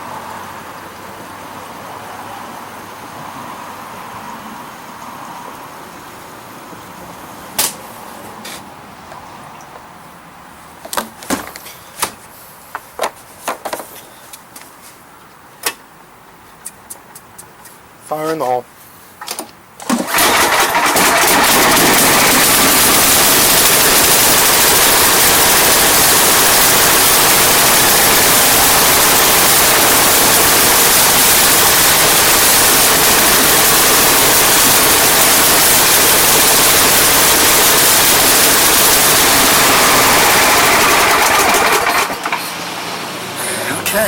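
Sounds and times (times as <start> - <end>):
snow blower engine running: 19.8 - 43.7.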